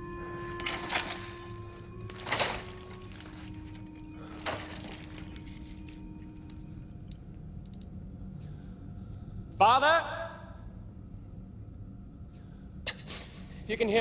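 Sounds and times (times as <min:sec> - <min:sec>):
faint ringing tones: 0:00.0 - 0:09.5.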